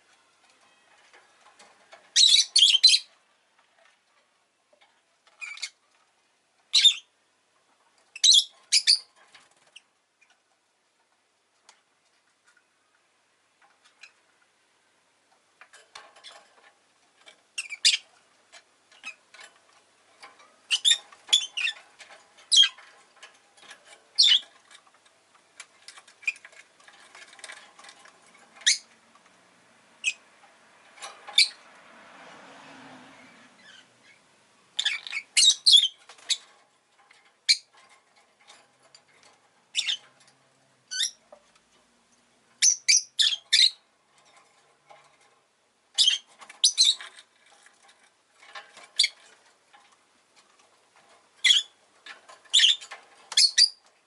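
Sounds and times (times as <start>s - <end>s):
lovebird chirping and squawking: 2.1s - 3.1s, 6.7s - 7.1s, 8.2s - 9.1s, 17.6s - 18.1s, 20.7s - 21.8s, 22.5s - 22.8s, 24.2s - 24.5s, 28.6s - 28.9s, 30.0s - 30.2s, 31.3s - 31.6s, 33.6s - 34.2s, 34.8s - 36.5s, 37.5s - 37.7s, 39.7s - 40.0s, 40.9s - 41.2s, 42.6s - 43.8s, 46.0s - 47.1s, 49.0s - 49.2s, 51.4s - 51.8s, 52.5s - 53.8s
soft rushing noise: 29.0s - 34.4s.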